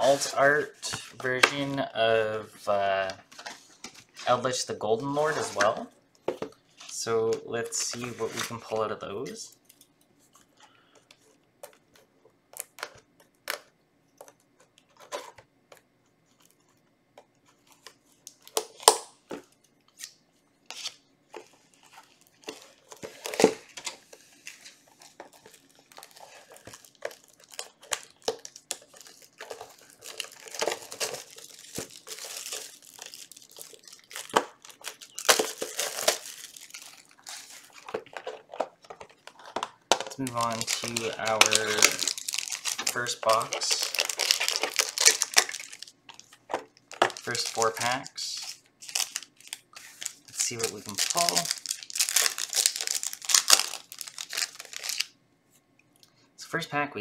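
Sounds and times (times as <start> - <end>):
packaging tearing and crinkling: 19.9 - 55.2.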